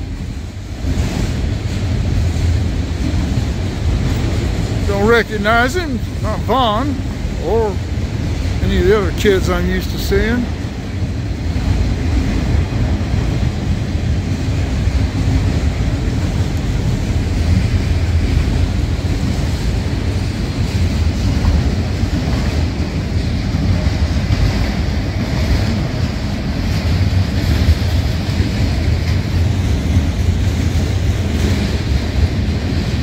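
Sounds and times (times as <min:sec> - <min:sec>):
freight train rolling past: 0:00.0 - 0:33.0.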